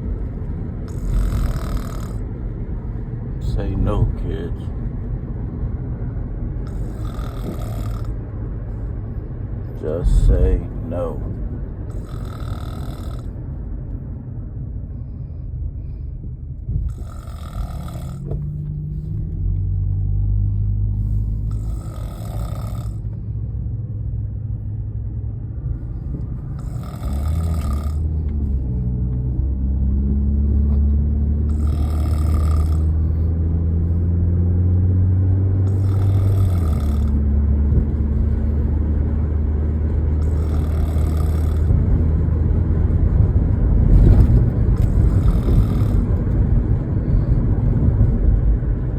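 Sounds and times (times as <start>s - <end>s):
car engine hum and road noise: 0.0s - 48.9s
woman snoring: 0.9s - 2.2s, 6.7s - 8.2s, 11.9s - 13.3s, 16.9s - 18.2s, 21.4s - 23.0s, 26.6s - 28.1s, 31.5s - 33.0s, 35.7s - 37.2s, 40.2s - 41.7s, 44.8s - 46.1s.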